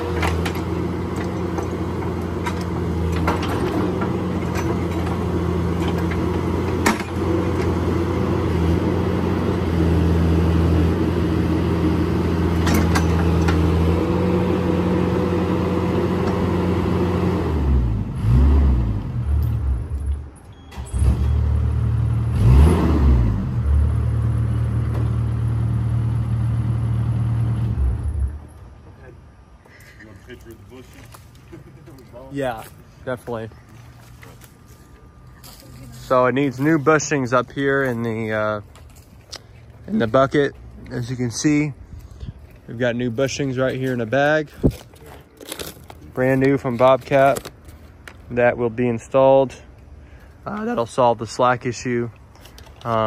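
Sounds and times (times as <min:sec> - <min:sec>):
diesel engine running: 0:00.0 - 0:29.6.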